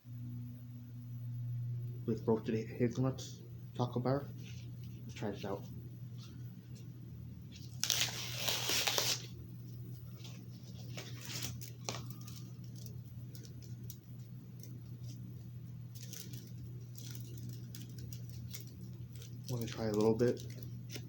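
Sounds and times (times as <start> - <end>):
steady low hum: 0.0 - 21.0
wrapper rustling and tearing: 7.5 - 9.4, 10.1 - 15.2, 15.9 - 21.0.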